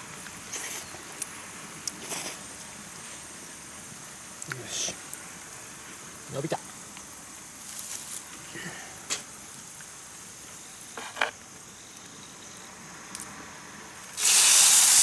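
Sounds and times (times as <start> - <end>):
food sizzling in hot oil: 0.0 - 8.5, 13.9 - 15.0.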